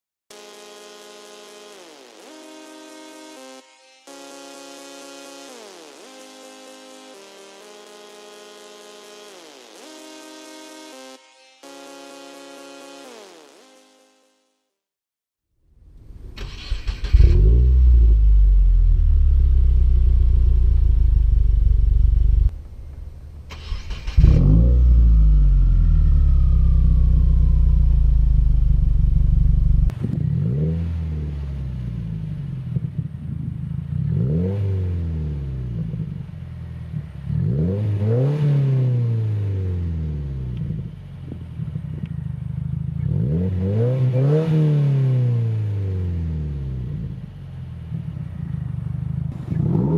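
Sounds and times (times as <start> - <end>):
car engine idling: 15.8 - 29.9, 47.0 - 49.6
car engine starting: 15.8 - 49.9
car engine revving: 16.0 - 33.0, 33.8 - 49.9.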